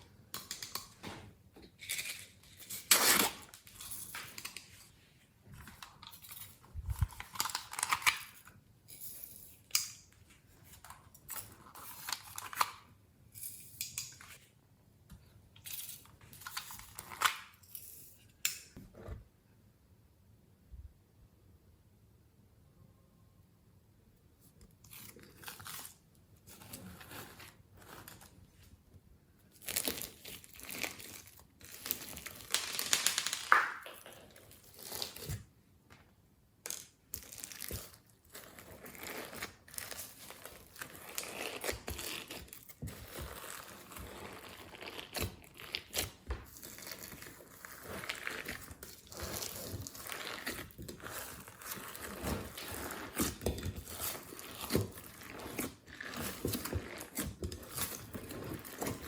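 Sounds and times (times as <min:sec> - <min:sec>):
slime crackling and squishing: 0:37.2 - 0:59.0.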